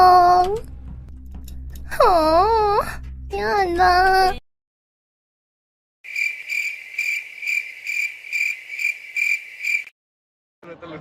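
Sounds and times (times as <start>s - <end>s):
cricket chirping: 6.1s - 9.9s.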